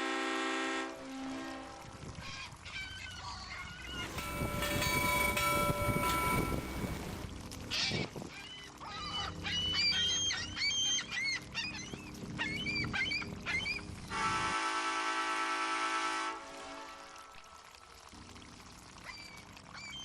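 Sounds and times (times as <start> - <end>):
multi-tone horn: 0.0 - 2.0, 14.1 - 17.5
seagulls squawking: 7.8 - 13.9.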